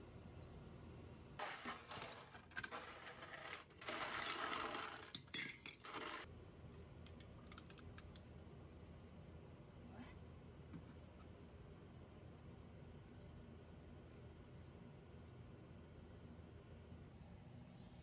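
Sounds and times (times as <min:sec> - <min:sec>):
clatter of dishes and utensils: 0:01.4 - 0:06.3.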